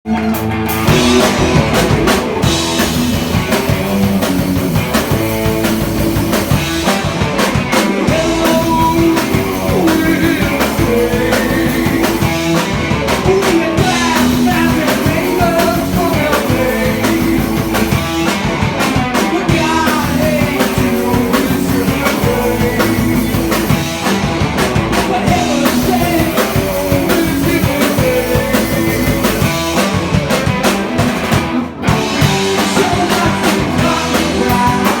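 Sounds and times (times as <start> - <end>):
drum kit: 0.1 - 35.0
electric guitars: 0.1 - 35.0.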